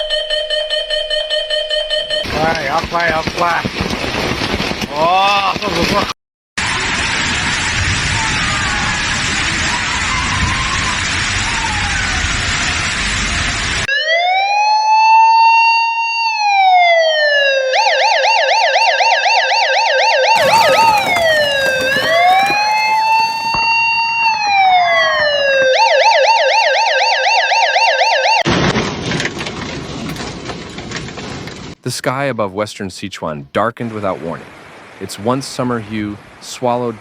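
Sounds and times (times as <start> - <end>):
electronic emergency siren: 0.0 - 2.3, 6.6 - 28.5
second siren tone: 13.9 - 18.7, 23.4 - 28.4.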